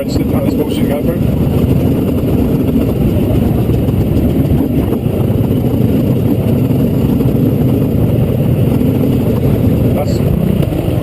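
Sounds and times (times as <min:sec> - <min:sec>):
motorbike engine running: 0:00.0 - 0:11.0.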